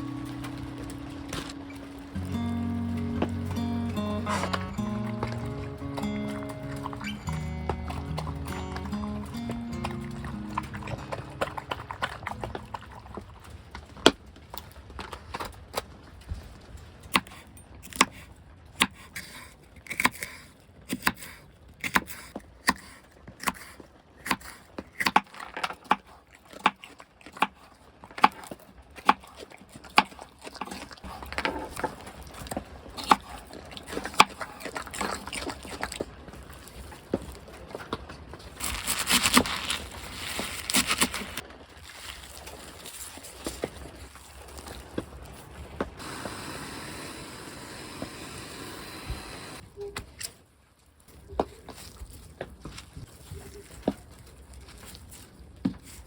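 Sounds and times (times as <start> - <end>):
firewood crackling and popping: 0.0 - 49.6
hiss from stove: 46.0 - 49.6.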